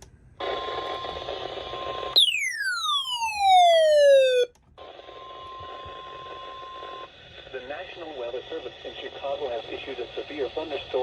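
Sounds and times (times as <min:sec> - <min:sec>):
electronic tone sweeping down: 0:02.2 - 0:04.5
warning alarm tone: 0:02.2 - 0:04.5.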